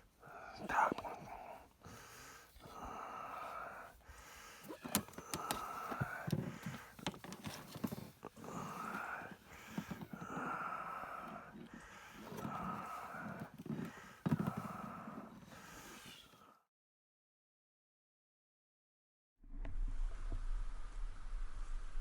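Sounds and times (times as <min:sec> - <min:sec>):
heavy breathing through a snorkel: 0:00.0 - 0:16.6.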